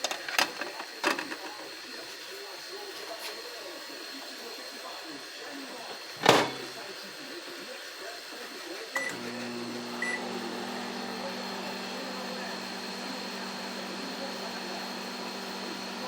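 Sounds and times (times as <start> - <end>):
keypad beeps: 9.0 - 9.2, 10.0 - 10.2
microwave oven humming: 9.0 - 16.0.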